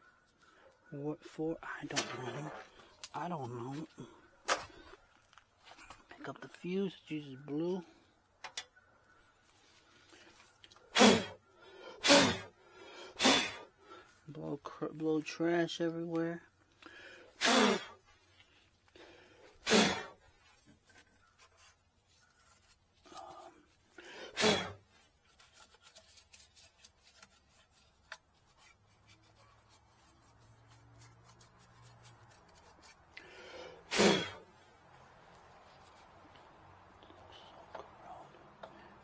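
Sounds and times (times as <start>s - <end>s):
faint clicks and handling noise: 8.4s - 8.8s, 25.0s - 33.3s, 34.7s - 39.0s
puffs of breath blowing: 9.8s - 14.2s, 16.9s - 18.0s.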